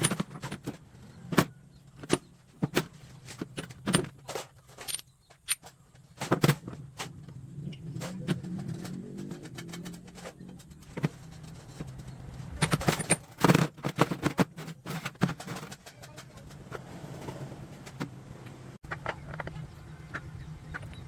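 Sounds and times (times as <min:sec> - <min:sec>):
metal parts knocking and clinking: 0:00.0 - 0:16.8.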